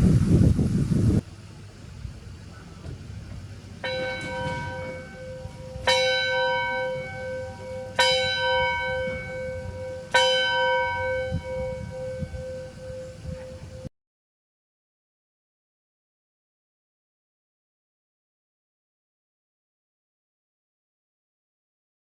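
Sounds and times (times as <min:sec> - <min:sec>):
school bell tolling: 0:03.8 - 0:13.9.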